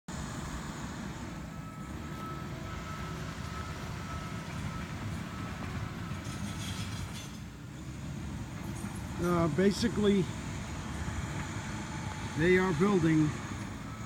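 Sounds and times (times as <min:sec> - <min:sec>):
diesel engine rumbling: 0:00.1 - 0:14.0.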